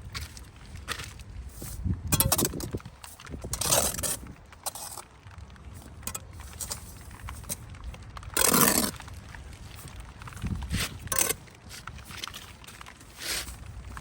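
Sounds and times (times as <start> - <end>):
trowel clinking against brick: 2.1 - 2.8, 11.1 - 11.4
trowel scraping mortar: 2.1 - 5.0, 8.4 - 9.0, 10.4 - 14.0.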